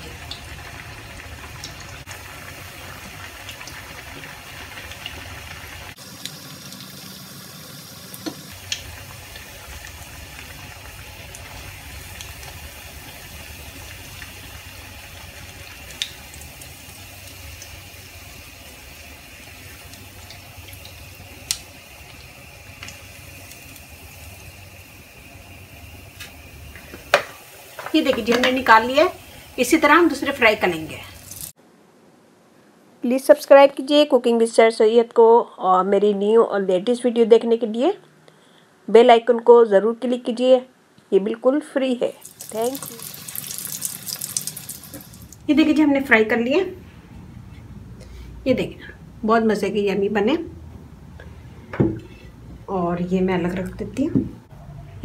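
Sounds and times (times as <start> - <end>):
chicken sizzling in oil: 0.0 - 31.6, 42.2 - 45.5
sharp pops of frying: 8.0 - 17.9, 19.5 - 24.6, 26.1 - 29.0, 42.2 - 45.5.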